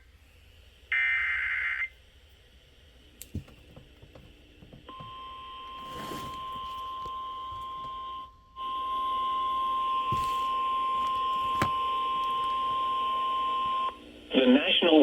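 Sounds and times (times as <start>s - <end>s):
steady warning alarm tone: 4.9s - 11.4s.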